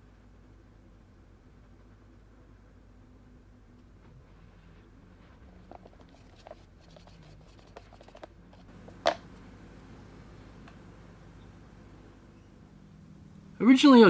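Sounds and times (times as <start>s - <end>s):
resin casting clicks and taps: 10.3s - 11.8s.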